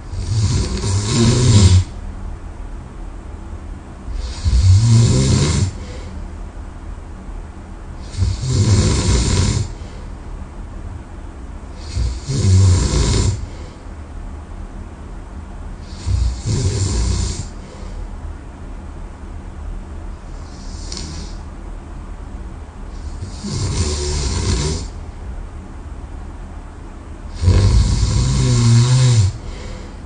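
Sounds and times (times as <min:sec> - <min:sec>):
person snoring loudly: 0:00.1 - 0:02.0, 0:04.1 - 0:06.1, 0:08.0 - 0:09.9, 0:11.8 - 0:13.7, 0:15.8 - 0:17.8, 0:23.0 - 0:25.0, 0:27.3 - 0:30.0.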